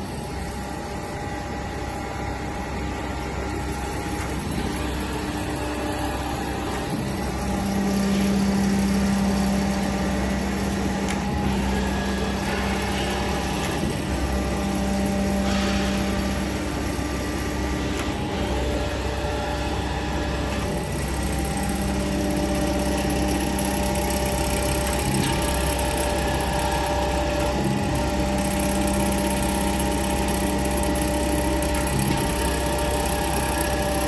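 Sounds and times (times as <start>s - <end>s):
surface grinder motors humming: 0.0s - 34.0s.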